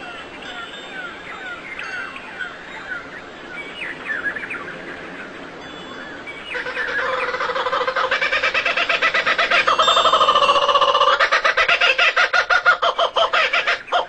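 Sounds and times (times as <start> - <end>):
fast pulsing bird call: 6.5 - 14.0.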